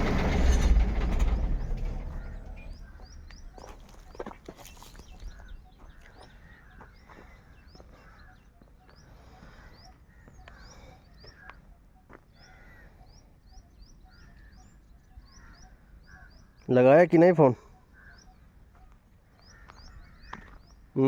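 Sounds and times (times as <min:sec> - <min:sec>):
faint low rumble: 0:00.0 - 0:06.2
small birds chirping: 0:01.2 - 0:21.0.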